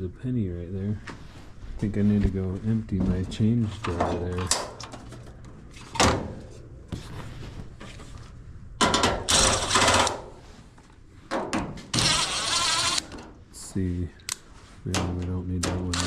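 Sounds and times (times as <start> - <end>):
power driver whirring: 11.9 - 13.2.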